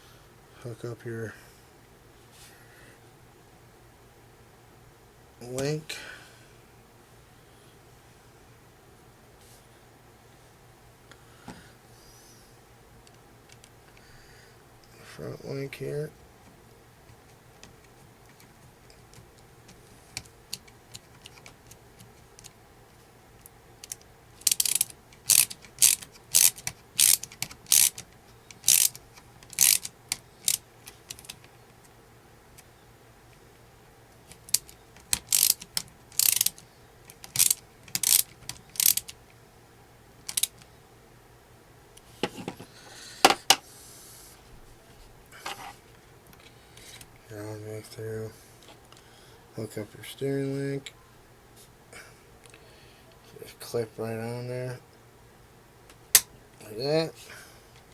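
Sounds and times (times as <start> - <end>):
ratcheting clicks of screwdriver: 23.8 - 31.5, 34.3 - 39.2, 40.3 - 40.6.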